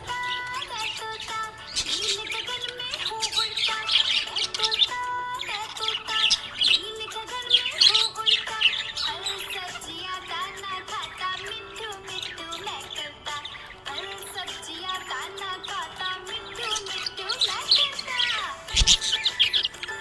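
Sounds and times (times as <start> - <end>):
background music: 0.0 - 20.0
budgies chirping: 0.0 - 20.0.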